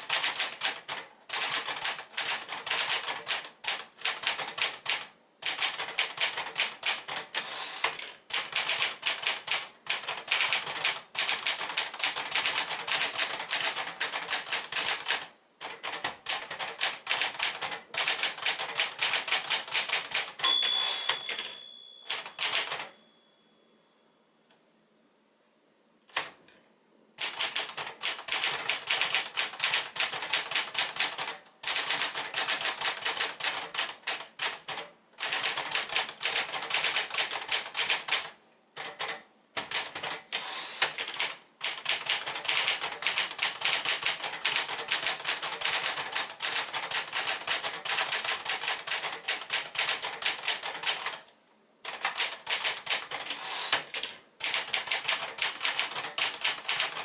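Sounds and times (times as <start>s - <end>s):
manual typewriter typing: 0.0s - 20.4s, 21.1s - 22.9s, 26.1s - 26.4s, 27.2s - 57.0s.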